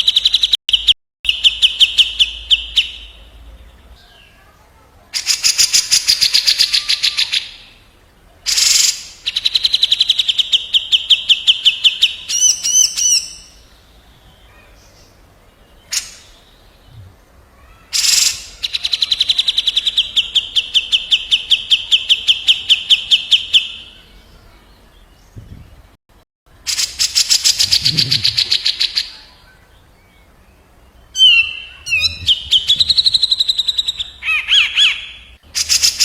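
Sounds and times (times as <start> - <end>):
harsh rasping bird calls: 14.4 - 24.6, 31.1 - 36.0
fast rolling bird trills: 26.6 - 29.4, 31.1 - 36.0.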